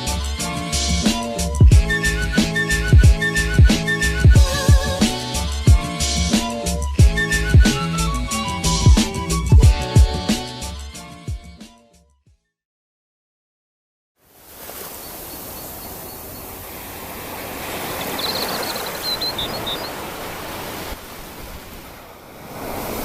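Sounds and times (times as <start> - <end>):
waves breaking on a beach: 14.2 - 23.0
faint high chirps: 14.9 - 16.6, 17.9 - 20.3.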